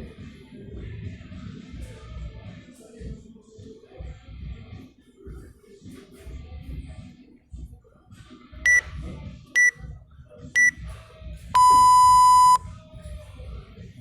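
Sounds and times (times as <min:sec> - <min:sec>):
long lower timer beep: 0:11.6 - 0:12.6
short high timer beeps: 0:11.6 - 0:12.6.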